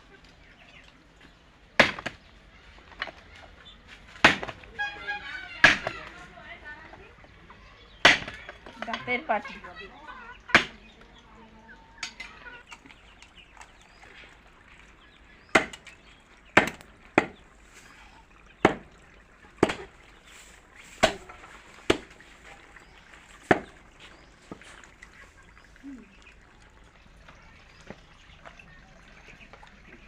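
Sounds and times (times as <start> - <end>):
heavy blade chopping bone: 8.1 - 8.4, 15.6 - 15.8, 16.6 - 17.4, 18.6 - 18.8, 19.6 - 19.9.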